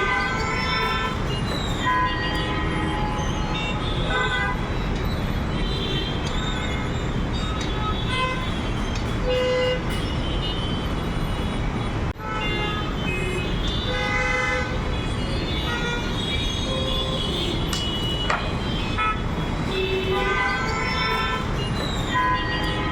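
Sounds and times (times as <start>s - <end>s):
traffic engines din: 0.0s - 22.9s
car horns honking: 12.3s - 22.9s.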